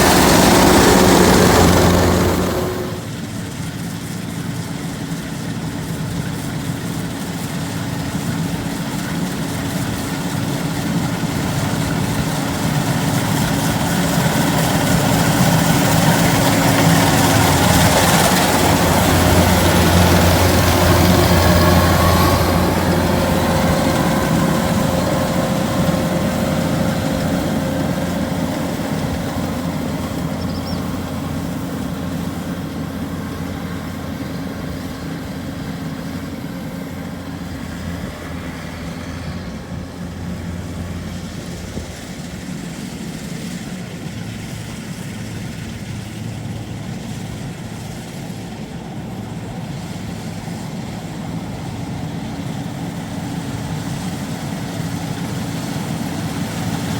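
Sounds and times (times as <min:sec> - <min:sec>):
diesel engine running: 0:00.0 - 0:03.4, 0:09.9 - 0:42.4.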